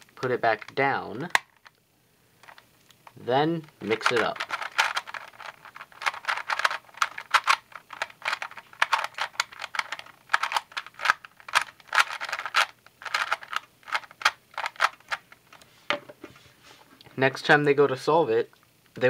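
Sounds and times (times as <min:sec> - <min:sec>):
puzzle cube plastic clicking: 0:02.4 - 0:15.7.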